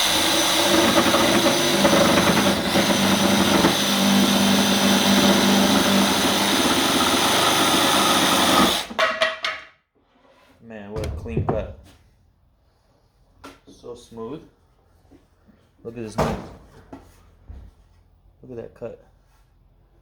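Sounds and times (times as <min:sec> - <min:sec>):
jigsaw sawing wood: 0:00.0 - 0:09.0.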